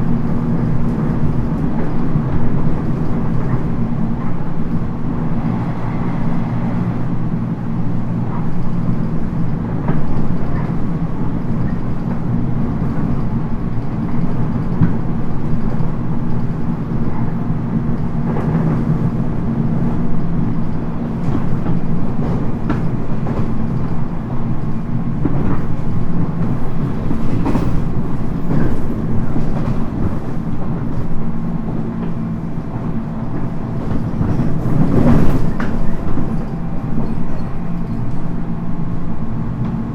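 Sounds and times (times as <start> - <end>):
train cabin low rumble: 0.0 - 39.9
rail-joint clicks: 8.2 - 39.9.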